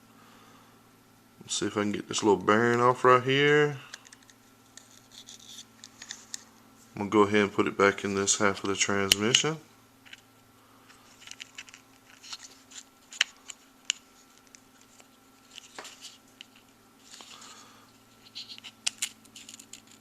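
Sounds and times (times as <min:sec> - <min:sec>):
faint steady hum: 0:00.0 - 0:20.0
small plastic parts clicking: 0:03.9 - 0:06.4, 0:11.1 - 0:16.6, 0:18.3 - 0:20.0.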